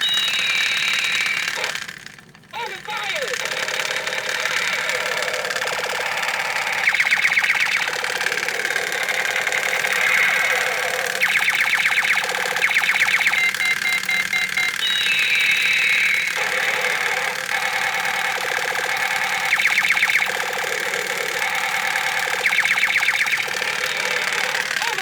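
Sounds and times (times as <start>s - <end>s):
electronic beeping tones: 0.0s - 1.7s, 6.2s - 25.0s
toy gun machine-gun fire: 0.0s - 25.0s
falling laser sweep: 6.2s - 13.6s, 18.8s - 25.0s.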